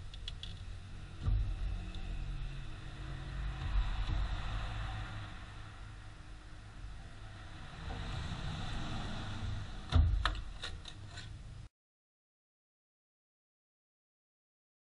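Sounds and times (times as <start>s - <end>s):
sudden loud knock: 1.2s - 1.8s, 9.9s - 10.4s.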